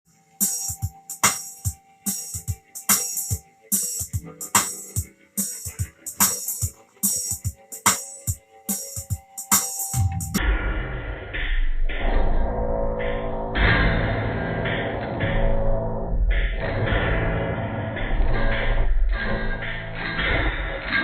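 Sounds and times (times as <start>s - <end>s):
drum machine beat: 0.4s - 10.4s, 16.2s - 18.8s
dense deep sound: 10.0s - 20.8s.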